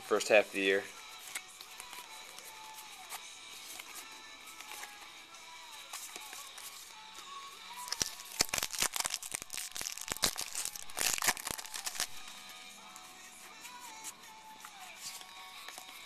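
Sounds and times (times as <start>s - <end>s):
soft background music: 0.0s - 16.0s
foil wrapper crackling: 7.8s - 12.4s.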